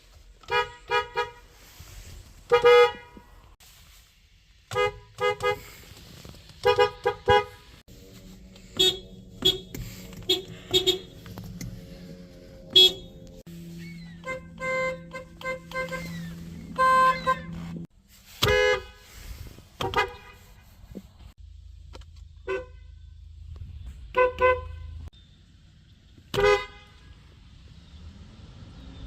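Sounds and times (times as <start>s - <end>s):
car horns honking: 0.4s - 3.5s, 4.7s - 6.0s, 6.6s - 20.7s, 22.4s - 23.1s, 24.1s - 25.1s, 26.3s - 27.3s.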